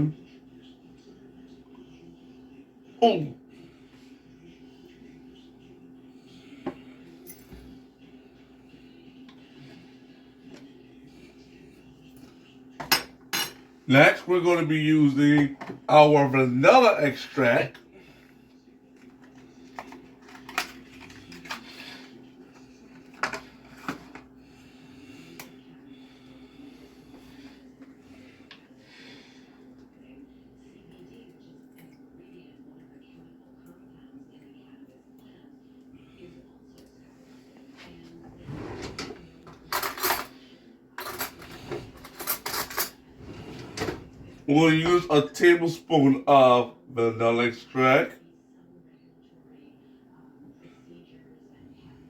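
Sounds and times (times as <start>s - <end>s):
faint steady hum: 0.0s - 52.0s
metal utensils clinking on dishes: 38.8s - 40.4s, 41.0s - 43.0s
kitchen items clicking and knocking: 41.0s - 44.2s.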